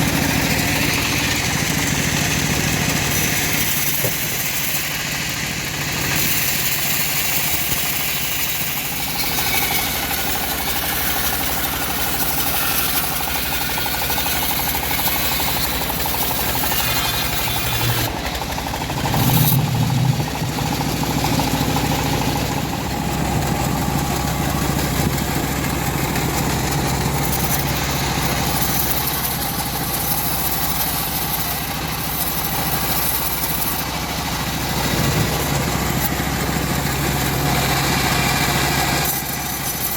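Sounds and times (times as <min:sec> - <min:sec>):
saw blade hissing in wood: 0:00.0 - 0:05.4, 0:06.0 - 0:18.2, 0:18.8 - 0:22.7
bandsaw mill engine hum: 0:00.0 - 0:39.9.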